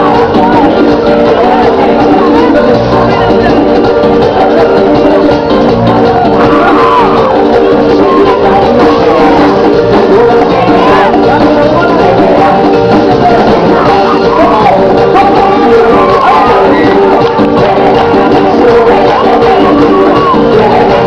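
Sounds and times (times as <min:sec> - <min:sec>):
band music: 0:00.0 - 0:21.0
person singing: 0:00.0 - 0:21.0.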